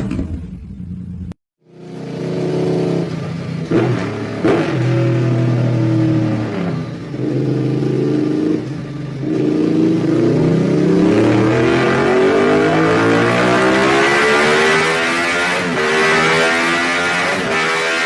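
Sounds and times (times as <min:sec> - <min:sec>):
motorcycle engine accelerating: 0:00.0 - 0:18.0.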